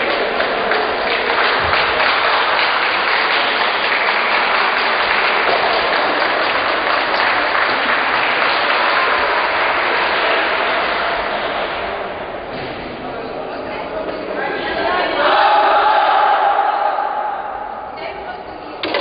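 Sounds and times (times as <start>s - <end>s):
crowd applauding: 0.0s - 12.0s.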